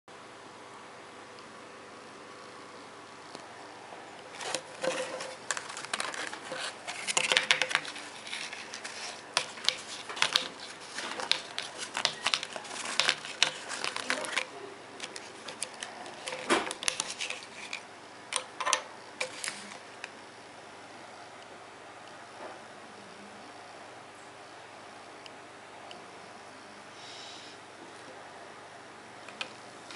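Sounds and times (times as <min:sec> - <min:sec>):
hands handling plastic items: 0:04.3 - 0:20.2.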